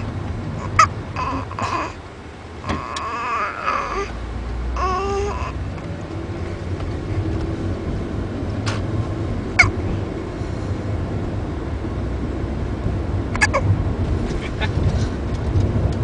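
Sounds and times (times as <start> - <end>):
baby whimpering cries: 0.6 - 2.0, 2.6 - 4.2, 4.8 - 5.6
baby hiccups: 13.4 - 13.7.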